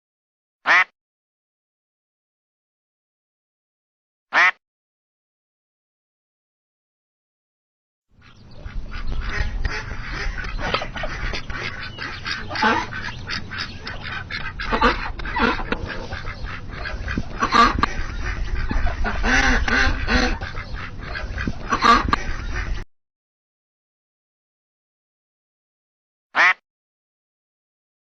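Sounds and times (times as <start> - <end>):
duck quacking: 0.7 - 0.9, 4.3 - 4.6, 8.2 - 22.8, 26.4 - 26.6
low background hum: 8.2 - 22.8.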